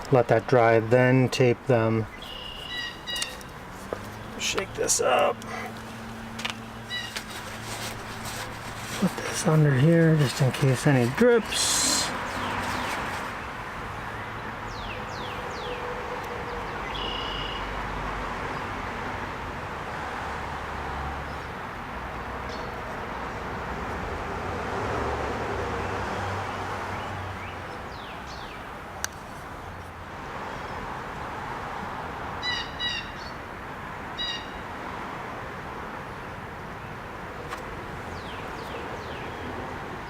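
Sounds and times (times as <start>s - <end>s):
birds chirping: 1.7s - 17.7s, 38.1s - 39.7s.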